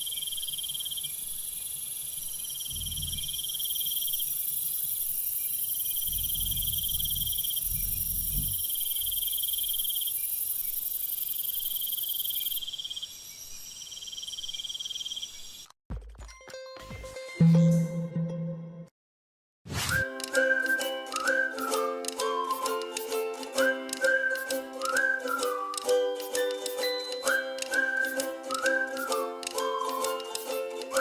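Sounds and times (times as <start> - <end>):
insects trilling: 0.0 - 15.7
low insect chirps: 0.0 - 15.7.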